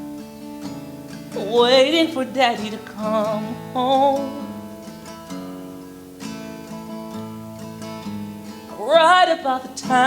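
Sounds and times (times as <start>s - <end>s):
acoustic guitar playing: 0.0s - 10.0s.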